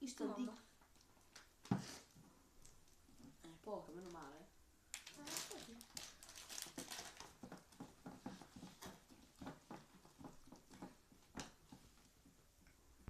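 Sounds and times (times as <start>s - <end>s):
utensil stirring slime in bowl: 6.7s - 12.8s.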